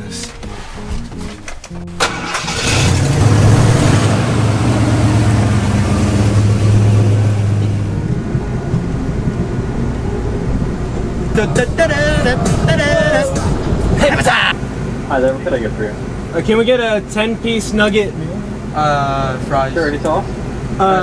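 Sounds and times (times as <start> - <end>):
car engine starting and running: 0.0 - 21.0.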